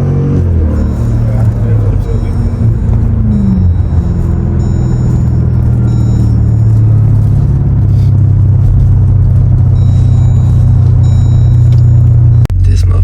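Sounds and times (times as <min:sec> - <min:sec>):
deep exhaust rumble: 0:00.0 - 0:13.0.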